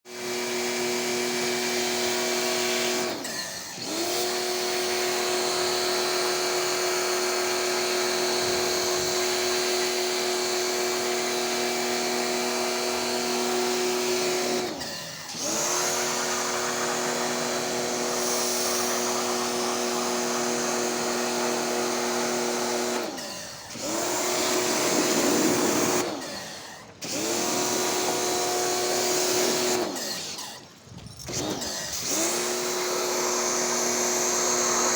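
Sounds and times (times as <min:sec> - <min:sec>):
electric motor whining: 0:03.8 - 0:11.8.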